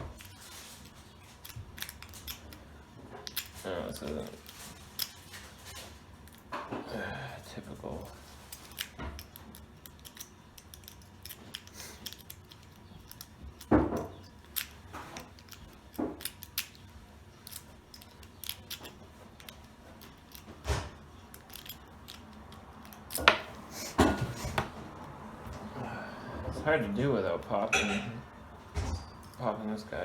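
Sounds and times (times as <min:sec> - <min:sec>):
lockpick clicking and scraping: 0:08.5 - 0:23.4.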